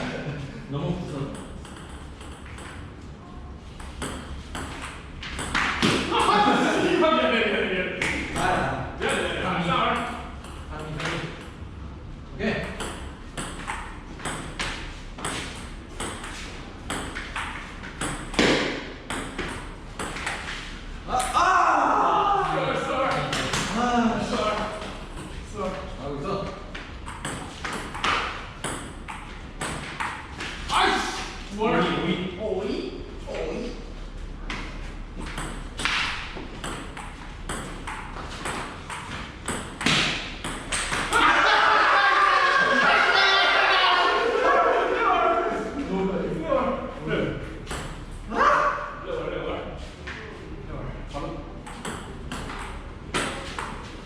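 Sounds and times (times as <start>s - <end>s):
table tennis ball hits: 3.8s - 6.4s, 12.6s - 20.5s, 27.0s - 30.6s, 35.2s - 41.3s, 51.6s - 53.9s.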